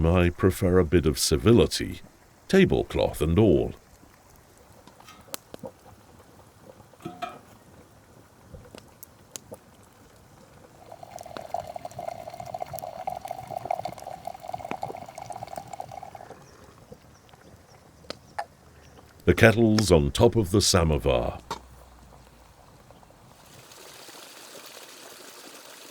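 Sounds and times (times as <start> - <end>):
tea pouring into cup: 10.8 - 16.6, 23.4 - 25.9.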